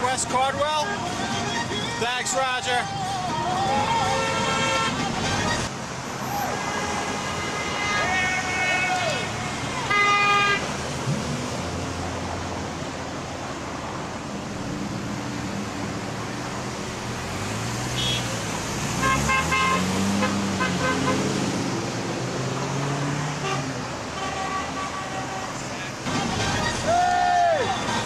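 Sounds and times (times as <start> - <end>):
cars passing on road: 0.0 - 28.0.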